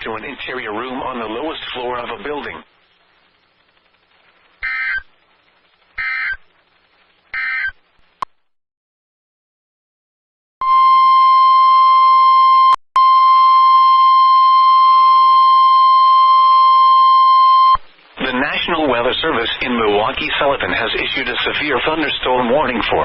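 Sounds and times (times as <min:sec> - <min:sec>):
buzzy data burst chirps: 0:03.6 - 0:06.5, 0:07.3 - 0:07.8
steady high warning alarm tone: 0:04.6 - 0:05.0, 0:06.0 - 0:06.4, 0:07.4 - 0:07.7.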